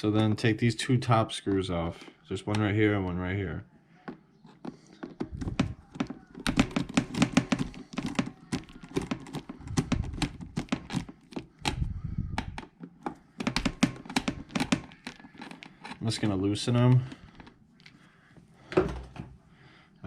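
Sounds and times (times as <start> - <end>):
screwdriver clicking and tapping: 4.5 - 16.0.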